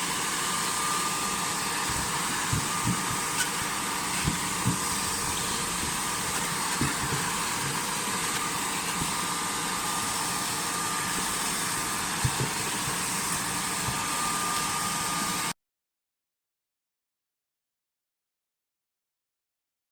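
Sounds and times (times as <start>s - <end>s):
hot-air blower whirring: 0.0s - 15.6s.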